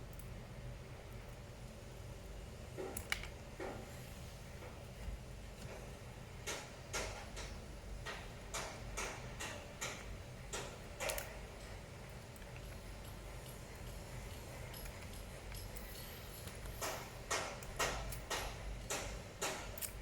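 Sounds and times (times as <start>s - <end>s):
low steady hum: 0.0s - 20.0s
light sharp clicks and ticks: 14.6s - 20.0s.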